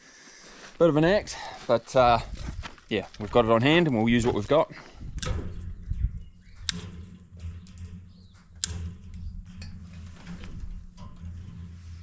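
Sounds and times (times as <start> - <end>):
steady low hum: 4.2 - 12.0
wire mesh being cut and bent: 6.5 - 11.8.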